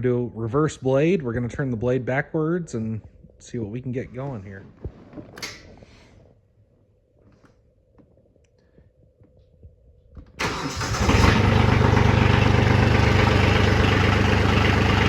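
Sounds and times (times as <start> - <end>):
tractor diesel engine starting: 10.4 - 15.0.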